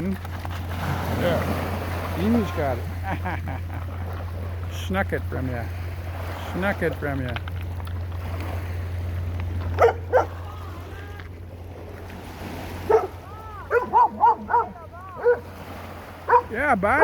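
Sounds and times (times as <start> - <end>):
dog barking: 9.8 - 10.4, 12.8 - 15.5, 16.2 - 17.0
dog yelping: 9.8 - 10.5, 12.8 - 15.6, 16.3 - 17.0.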